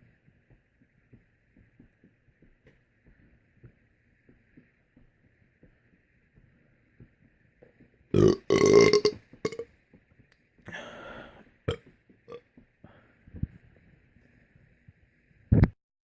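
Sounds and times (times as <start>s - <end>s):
man belching: 8.2s - 9.6s.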